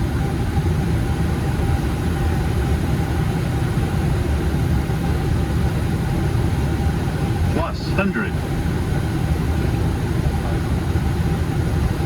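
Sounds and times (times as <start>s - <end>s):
airflow and engine rumble: 0.0s - 12.0s.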